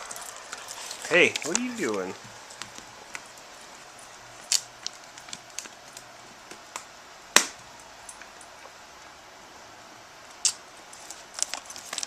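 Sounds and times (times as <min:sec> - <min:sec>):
dog chewing a wooden stick: 0:00.0 - 0:03.4.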